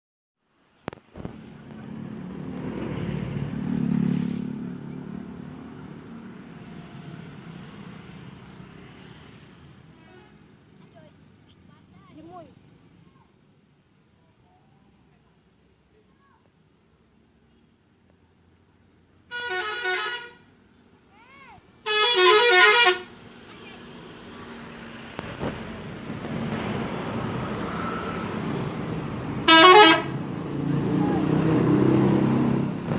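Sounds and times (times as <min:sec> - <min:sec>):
passing vehicle: 0:00.9 - 0:13.1, 0:20.2 - 0:32.9
bus engine driving past: 0:01.2 - 0:09.9, 0:22.9 - 0:32.9.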